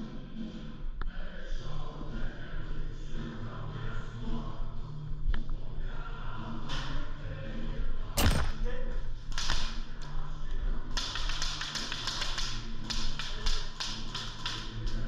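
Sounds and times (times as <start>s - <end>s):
airsoft guns firing: 8.2s - 8.7s.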